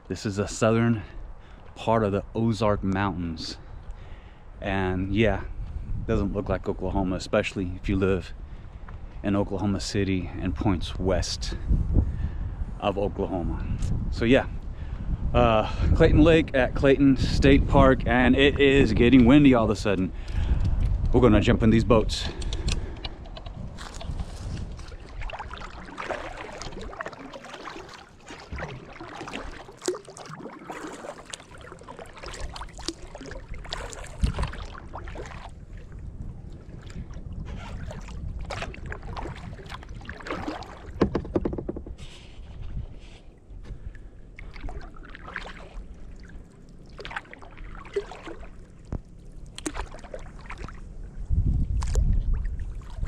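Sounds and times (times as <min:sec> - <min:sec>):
water lapping against hull: 0:00.0 - 0:12.6, 0:13.3 - 0:53.0
wind gusts on microphone: 0:00.0 - 0:27.4, 0:32.3 - 0:45.0, 0:50.6 - 0:53.0
paddle splashing in water: 0:22.8 - 0:51.0, 0:51.7 - 0:53.0.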